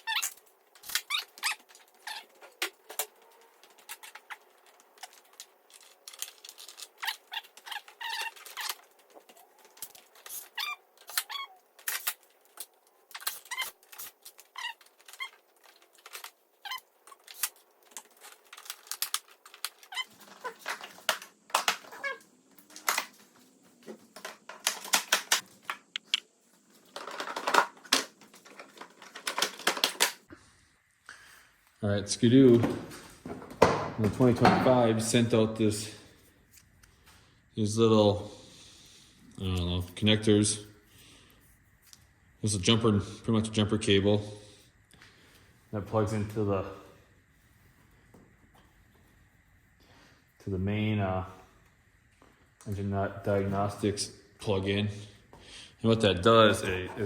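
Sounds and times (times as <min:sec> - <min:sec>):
plastic panels clicking and squeaking: 0:00.0 - 0:26.2, 0:26.9 - 0:30.2.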